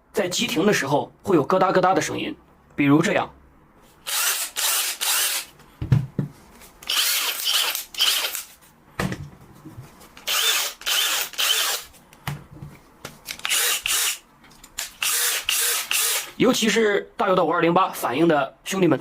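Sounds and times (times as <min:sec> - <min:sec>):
electric drill running: 0:04.1 - 0:05.5, 0:06.8 - 0:08.5, 0:10.2 - 0:11.9, 0:13.4 - 0:14.2, 0:15.0 - 0:16.4.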